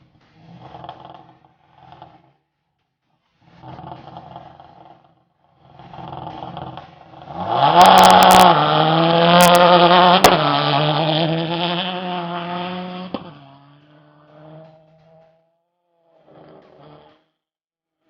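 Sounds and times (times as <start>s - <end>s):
car engine accelerating: 3.4s - 17.2s.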